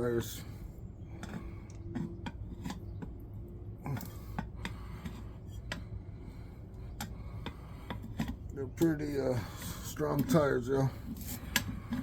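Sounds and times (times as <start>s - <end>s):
low steady hum: 0.0s - 12.0s
tools clicking against wheel rim: 6.9s - 12.0s.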